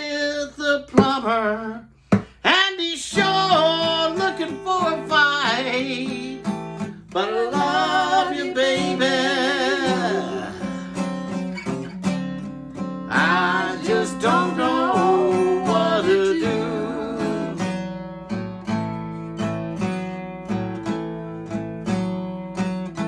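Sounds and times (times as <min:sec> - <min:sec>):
acoustic blues guitar: 0:00.0 - 0:23.0.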